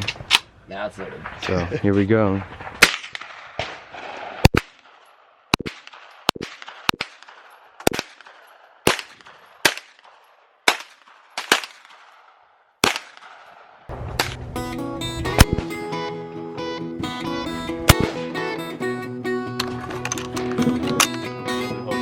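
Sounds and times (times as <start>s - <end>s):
gunshots with echo: 2.4s - 14.6s, 17.8s - 18.3s
strummed guitar music: 13.9s - 22.0s.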